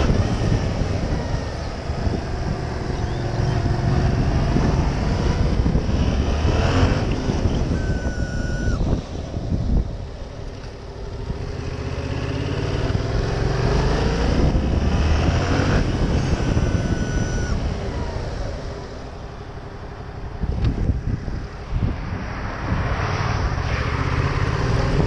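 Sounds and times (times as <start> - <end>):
steady high whine: 0.0 - 9.4, 15.8 - 20.3
motorcycle engine accelerating: 0.0 - 9.8, 10.4 - 21.4
wind on microphone: 0.0 - 19.0, 20.2 - 25.0.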